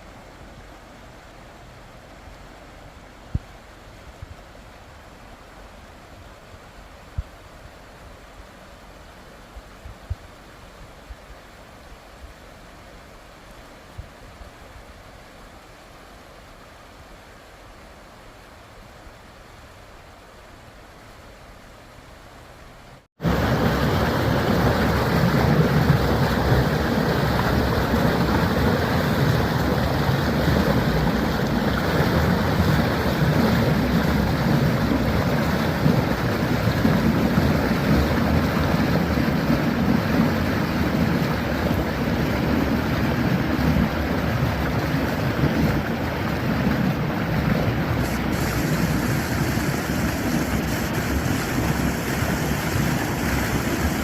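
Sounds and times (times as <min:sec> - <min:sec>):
floodwater rushing: 0:23.2 - 0:54.0.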